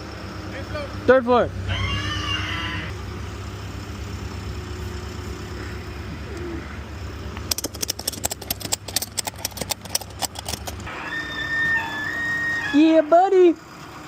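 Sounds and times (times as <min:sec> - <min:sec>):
engine humming: 0:00.0 - 0:14.0
sharp clicks and rattles: 0:07.4 - 0:10.9.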